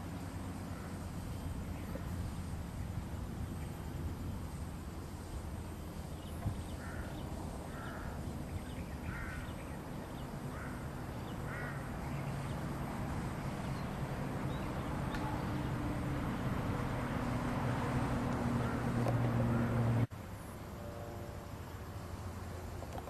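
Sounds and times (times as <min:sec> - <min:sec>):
bird calling: 0:06.2 - 0:12.7, 0:18.2 - 0:20.0.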